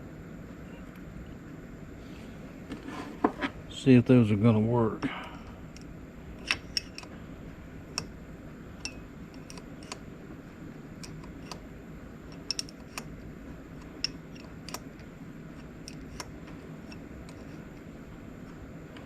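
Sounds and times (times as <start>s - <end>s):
steady low hum: 0.0s - 19.0s
light metal clicks and taps: 5.7s - 7.1s, 8.8s - 10.0s, 12.3s - 13.1s, 13.8s - 14.8s.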